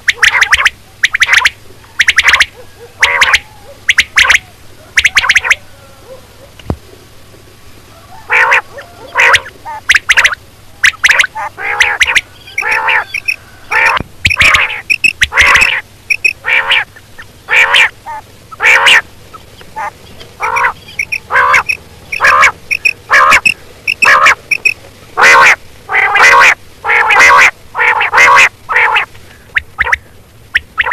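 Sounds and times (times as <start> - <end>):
quail calling: 0.0 - 6.8, 7.9 - 30.9.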